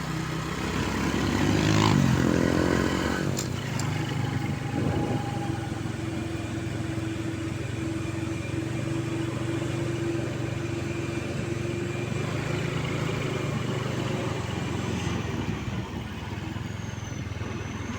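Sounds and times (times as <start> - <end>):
diesel truck engine running: 0.0 - 17.9.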